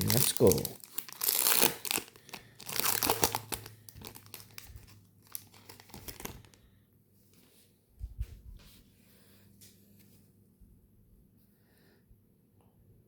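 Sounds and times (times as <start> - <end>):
foil wrapper tearing and crinkling: 0.0 - 6.6.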